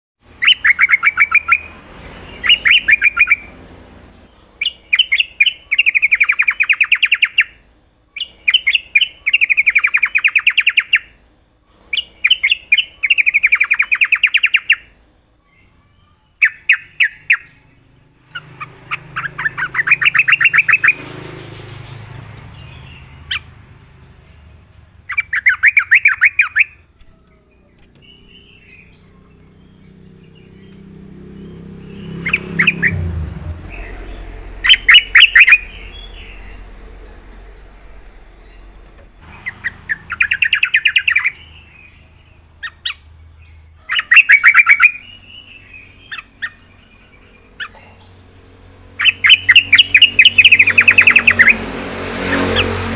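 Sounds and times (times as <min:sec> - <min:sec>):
bird singing repeated notes: 0:00.2 - 0:52.9.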